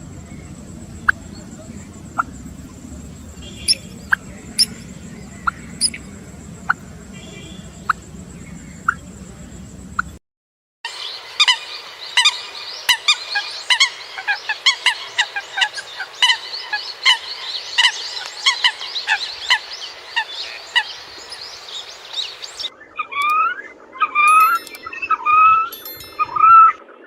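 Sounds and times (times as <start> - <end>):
coots honking: 1.0 - 10.1.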